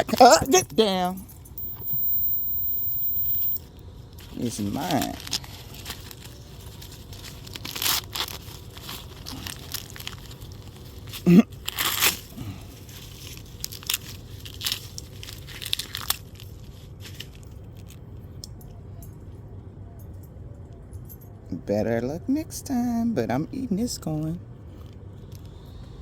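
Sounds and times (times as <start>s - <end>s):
corn husks tearing: 4.2s - 17.4s.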